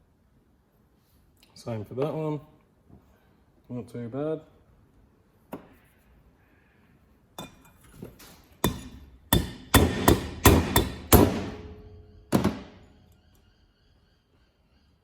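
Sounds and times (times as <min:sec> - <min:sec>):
hammer striking metal: 0:07.4 - 0:07.7, 0:08.6 - 0:12.9.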